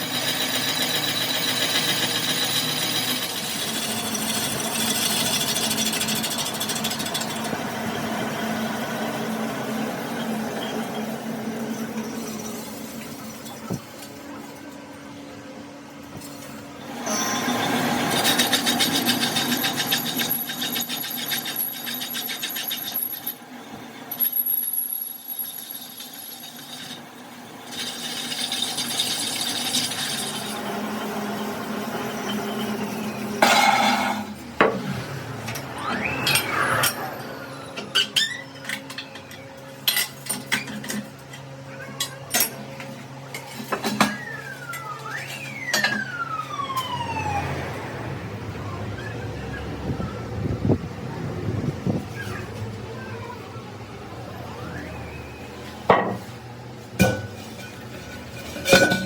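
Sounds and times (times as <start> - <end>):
power tool grinding steel: 0.0 - 7.6, 16.9 - 23.4, 26.0 - 30.9.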